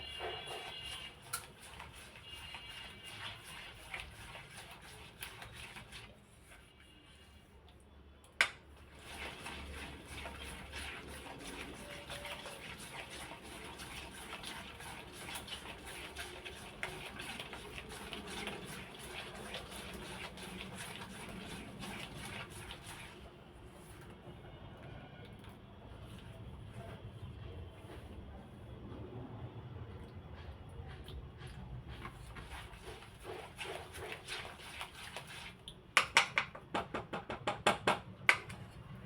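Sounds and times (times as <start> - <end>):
whisk clattering against bowl: 32.5 - 38.5.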